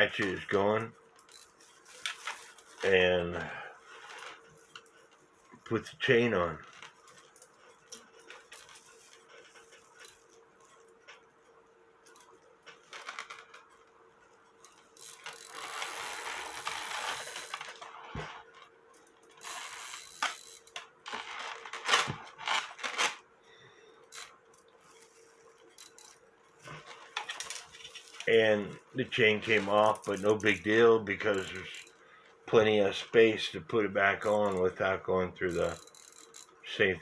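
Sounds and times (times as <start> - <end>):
faint steady hum: 0.0 - 37.0
small metal clicks: 24.0 - 26.2, 35.5 - 36.6
clock chain clinking and rattling: 29.5 - 30.6, 35.6 - 36.5.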